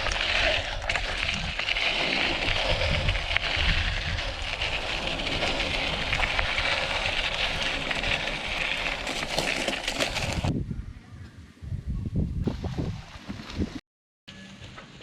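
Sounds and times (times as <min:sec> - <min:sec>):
wind rushing: 0:00.0 - 0:09.1
stones and bike rattling: 0:00.0 - 0:10.5, 0:12.4 - 0:13.8
bike tyre noise on gravel: 0:00.0 - 0:10.6, 0:12.4 - 0:13.8.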